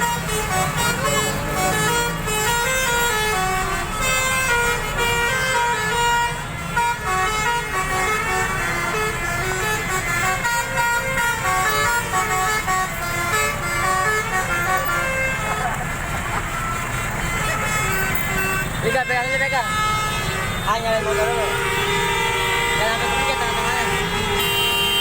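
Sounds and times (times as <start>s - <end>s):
low engine rumble: 0.0s - 24.6s
multi-tone horn melody: 0.0s - 25.0s.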